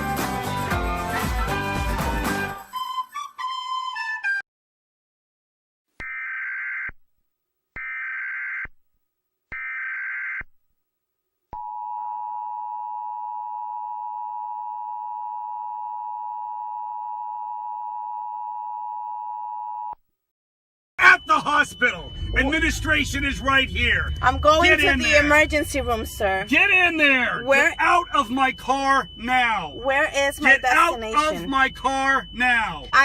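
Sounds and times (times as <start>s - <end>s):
long steady attention tone: 11.5s - 20.0s, 21.0s - 33.0s
data tone bursts: 21.0s - 33.0s.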